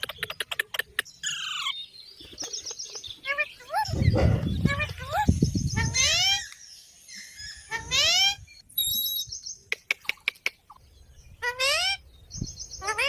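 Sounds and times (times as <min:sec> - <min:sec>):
parrot squawking: 0:01.2 - 0:01.7, 0:12.8 - 0:13.0.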